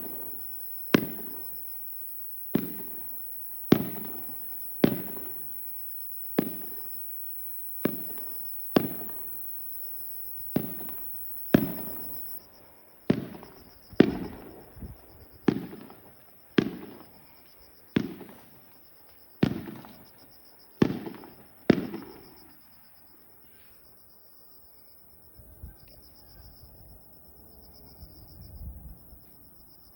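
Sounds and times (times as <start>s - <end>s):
distant fireworks bangs: 0.0s - 22.7s.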